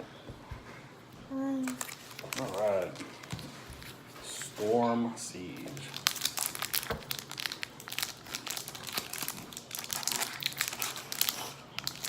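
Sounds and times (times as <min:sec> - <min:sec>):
foil wrapper crinkling: 0:01.6 - 0:04.5, 0:05.4 - 0:12.0.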